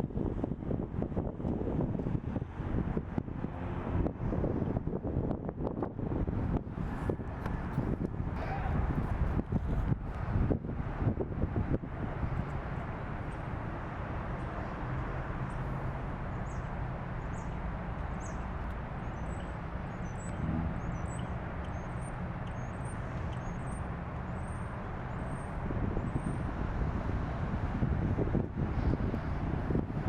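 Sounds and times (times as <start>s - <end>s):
low outdoor rumble: 5.0s - 30.0s.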